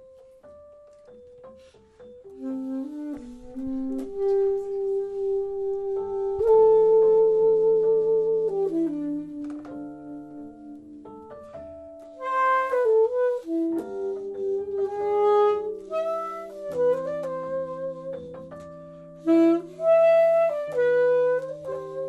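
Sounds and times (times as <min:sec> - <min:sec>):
saxophones playing jazz: 0:02.3 - 0:11.2, 0:12.1 - 0:22.0.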